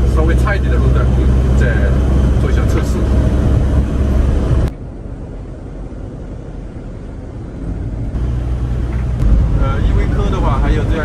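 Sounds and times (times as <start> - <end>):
engine and road noise: 0.0 - 11.0.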